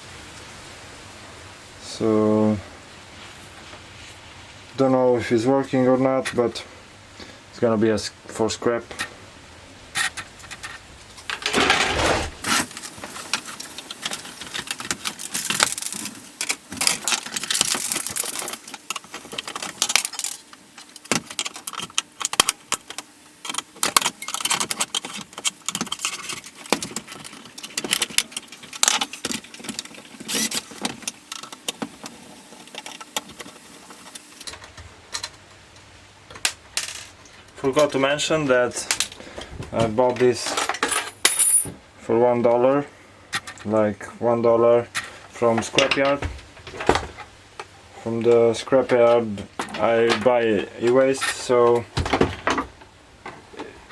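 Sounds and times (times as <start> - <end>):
clicks and rattles of small parts: 10.0 - 38.0, 38.8 - 39.5, 40.1 - 41.6
loud clatter: 11.3 - 12.8.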